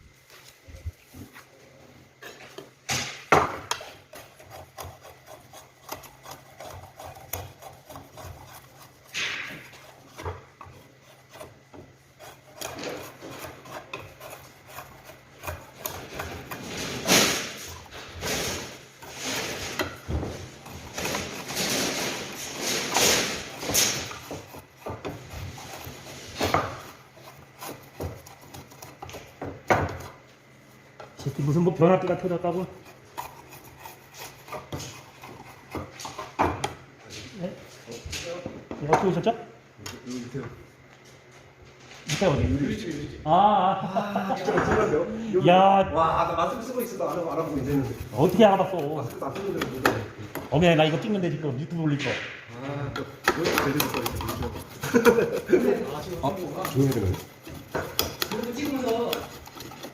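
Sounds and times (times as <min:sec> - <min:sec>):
scraping and rubbing on axe: 0:03.7 - 0:30.3, 0:32.6 - 0:36.4, 0:46.2 - 0:50.8, 0:53.2 - 0:59.9.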